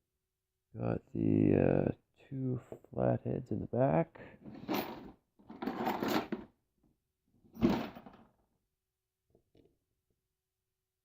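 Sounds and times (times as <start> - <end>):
objects being moved and slid: 4.4 - 6.5, 7.5 - 8.2.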